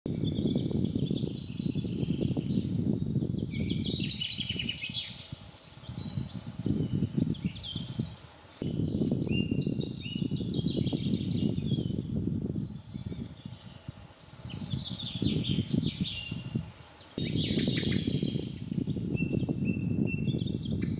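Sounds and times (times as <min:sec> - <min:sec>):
songbirds singing: 0:00.1 - 0:20.9
low rustling noise: 0:01.6 - 0:20.1.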